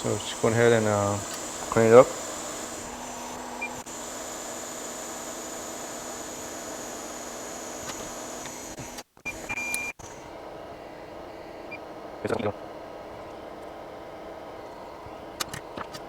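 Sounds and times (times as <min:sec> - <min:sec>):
thin high whine: 0:00.0 - 0:10.3
equipment hum and hiss: 0:00.0 - 0:16.0.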